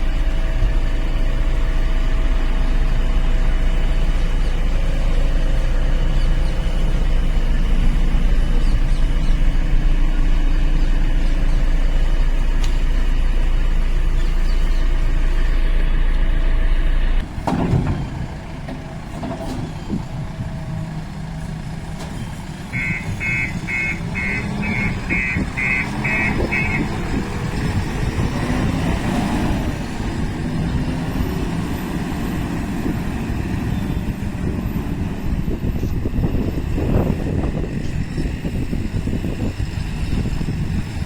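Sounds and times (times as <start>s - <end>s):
diesel engine running: 0.0s - 41.0s
reversing alarm beeping: 22.7s - 26.9s.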